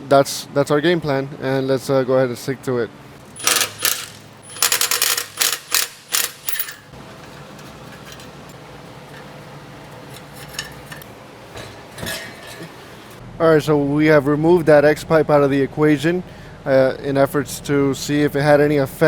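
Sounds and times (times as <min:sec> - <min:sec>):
ratchet wrench clicks and clanks: 0:03.2 - 0:08.2.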